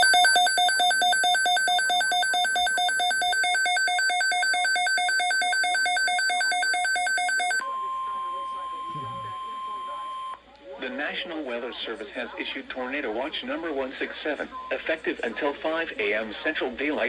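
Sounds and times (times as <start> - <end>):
two-tone electronic warble alarm: 0.0 - 7.7.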